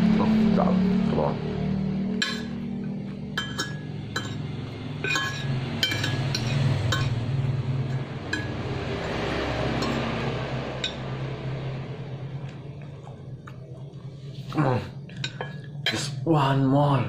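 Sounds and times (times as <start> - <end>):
cutlery clinking against a dish: 2.2 - 2.6, 3.3 - 7.2, 7.9 - 9.2, 9.8 - 10.2, 15.1 - 16.2.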